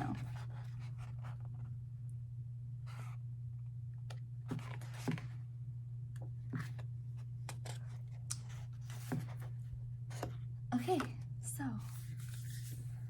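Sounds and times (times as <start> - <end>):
steady low hum: 0.0 - 13.0
paper rustling: 11.8 - 13.0.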